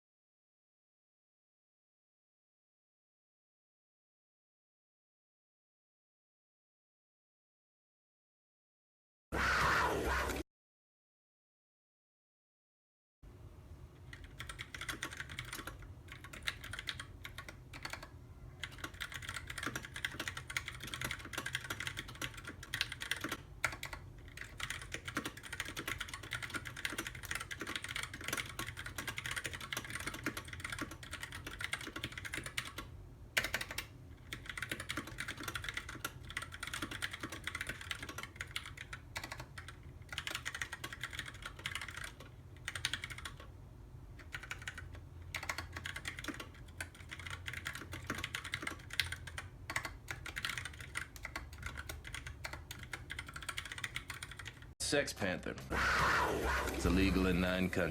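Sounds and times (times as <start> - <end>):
mechanical keyboard typing: 14.1 - 43.5, 44.2 - 54.7.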